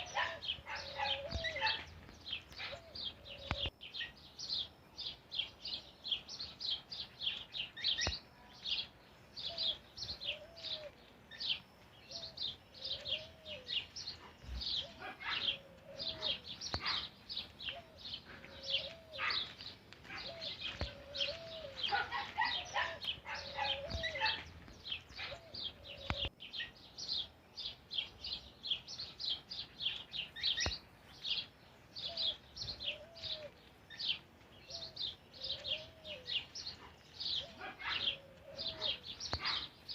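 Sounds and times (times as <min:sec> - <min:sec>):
birds chirping: 0:00.0 - 0:39.9
low rising and falling bird call: 0:09.4 - 0:19.5, 0:20.2 - 0:26.3, 0:30.4 - 0:39.7.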